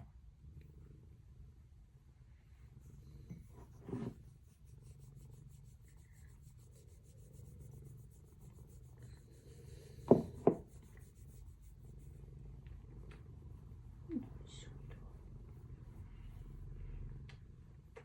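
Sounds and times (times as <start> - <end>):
cat purring: 2.2 - 18.0
rubbing sounds: 3.3 - 12.6.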